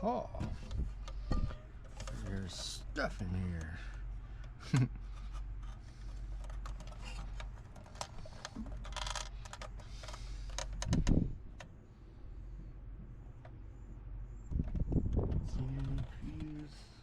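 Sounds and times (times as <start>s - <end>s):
steady low hum: 0.0s - 17.0s
hands rummaging through parts: 0.5s - 3.8s, 4.4s - 11.1s.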